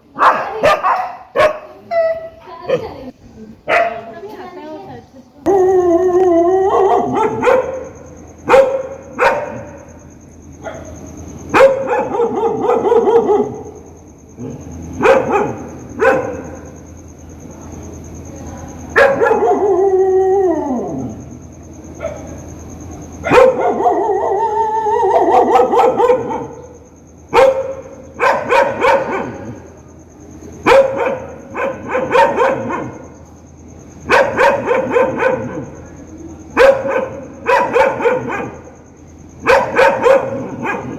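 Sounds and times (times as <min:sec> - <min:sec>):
dog barking angrily: 0:00.2 - 0:03.0, 0:03.7 - 0:04.1, 0:06.7 - 0:09.8, 0:11.5 - 0:13.8, 0:14.4 - 0:16.7, 0:23.2 - 0:24.3, 0:25.1 - 0:26.6, 0:27.3 - 0:29.6, 0:30.6 - 0:33.1, 0:34.0 - 0:35.8, 0:36.6 - 0:38.7, 0:39.4 - 0:40.9.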